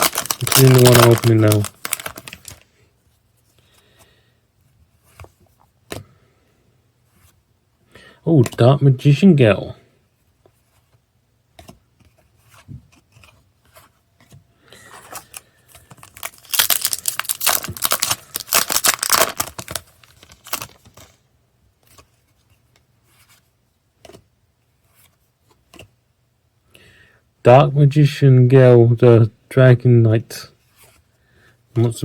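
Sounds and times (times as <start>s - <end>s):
foil wrapper crinkling and tearing: 0.0s - 2.7s, 15.2s - 21.1s.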